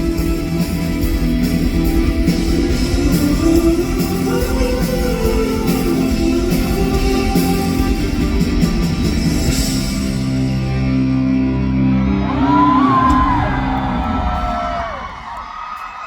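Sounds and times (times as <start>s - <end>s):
live rock band playing: 0.0s - 14.7s
person singing: 2.6s - 8.2s.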